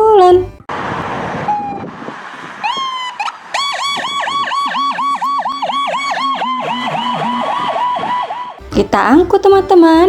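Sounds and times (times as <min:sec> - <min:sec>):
lower siren tone: 0:00.5 - 0:08.7
electronic ambulance siren: 0:00.8 - 0:08.7.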